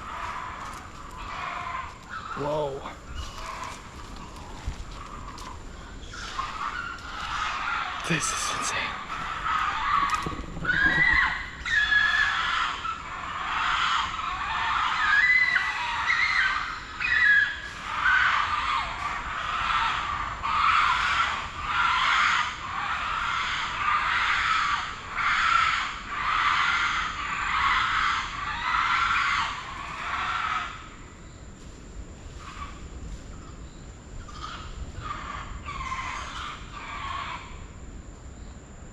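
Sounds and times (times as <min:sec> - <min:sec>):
monkeys squealing calls: 0:06.1 - 0:18.5.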